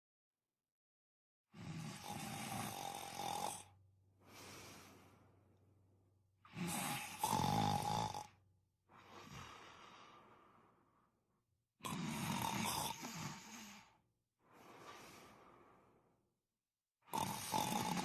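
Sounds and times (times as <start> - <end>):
person snoring: 1.5 - 5.2, 6.4 - 10.6, 11.8 - 15.8, 17.0 - 18.0
long quiet breath: 4.2 - 5.9, 8.9 - 12.0, 12.9 - 16.3.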